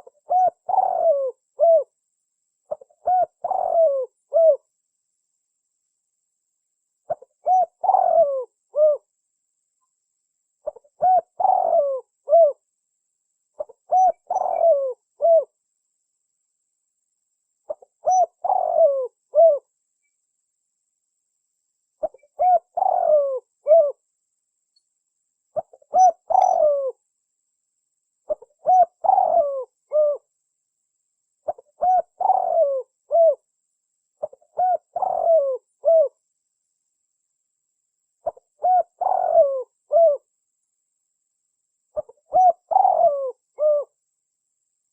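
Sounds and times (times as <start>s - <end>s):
dove cooing: 0.0s - 1.9s, 2.7s - 4.7s, 7.1s - 9.1s, 10.6s - 12.6s, 13.6s - 15.5s, 17.7s - 19.7s, 22.0s - 24.0s, 25.6s - 27.0s, 28.3s - 30.3s, 31.4s - 33.4s, 34.2s - 36.2s, 38.2s - 40.3s, 42.0s - 44.0s.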